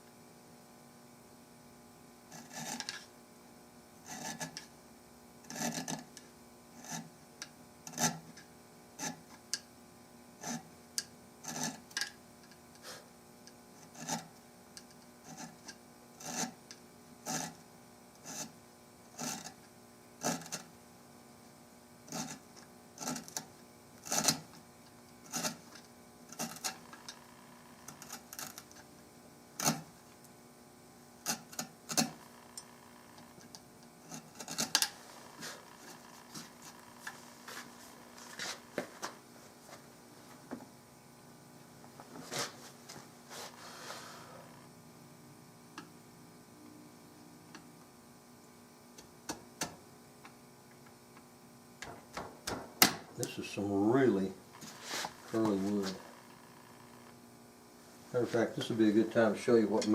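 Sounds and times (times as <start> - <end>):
faint steady hum: 0.0 - 59.9
hand tool scraping wood: 2.3 - 3.1, 4.0 - 4.7, 5.5 - 6.1, 6.8 - 7.1, 7.9 - 8.3, 9.0 - 9.2, 10.4 - 10.7, 11.4 - 12.1, 13.8 - 14.3, 15.2 - 16.6, 17.2 - 17.6, 18.2 - 18.6, 19.2 - 19.6, 20.2 - 20.7, 22.1 - 22.4, 23.0 - 24.5, 25.2 - 27.2, 27.8 - 28.9, 29.6 - 29.9, 34.0 - 39.8, 42.2 - 44.6, 54.1 - 56.2.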